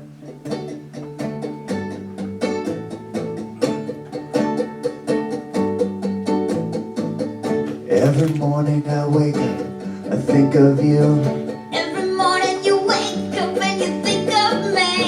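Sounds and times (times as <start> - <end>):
ukulele plucked chords: 0.0 - 15.0.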